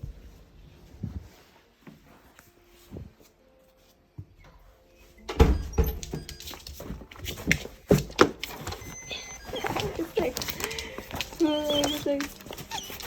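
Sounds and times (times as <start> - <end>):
dog paws scrabbling: 5.8 - 13.0
dog whimpering: 8.5 - 13.0.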